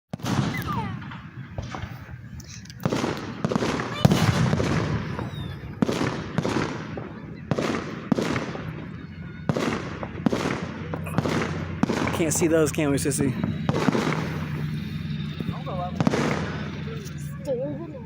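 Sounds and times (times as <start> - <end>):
fireworks bangs with echo: 0.1 - 17.4.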